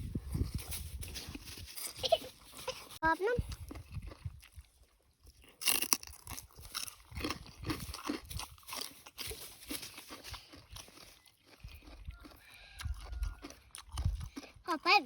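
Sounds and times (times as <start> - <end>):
crunching and chewing crispy food: 0.1 - 15.0.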